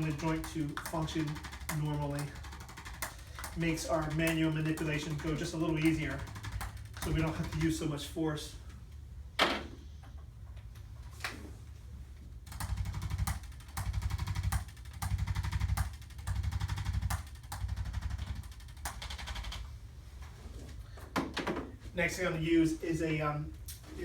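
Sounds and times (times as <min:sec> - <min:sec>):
rapid-fire tapping: 0:00.0 - 0:08.0, 0:12.5 - 0:19.6.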